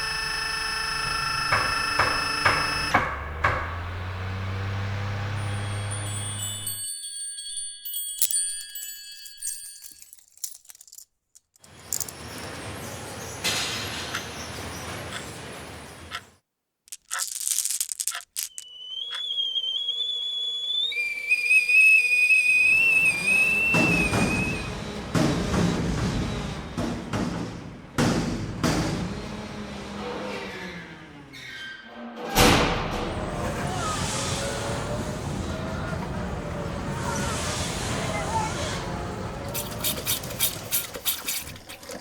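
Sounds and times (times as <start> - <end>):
whistled tone stepping down: 18.4 - 24.9
hissing noise: 36.6 - 41.7.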